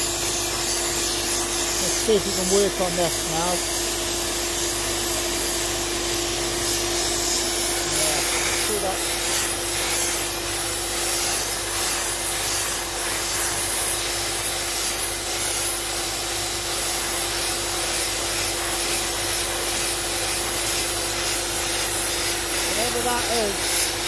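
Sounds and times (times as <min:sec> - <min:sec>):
vacuum hum: 0:00.0 - 0:04.4, 0:05.1 - 0:10.6
sandblasting air hiss: 0:00.0 - 0:24.0.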